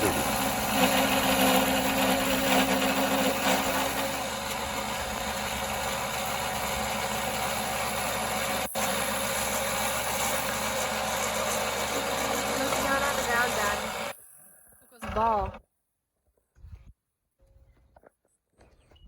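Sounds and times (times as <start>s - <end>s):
wood lathe motor humming: 0.0s - 15.6s.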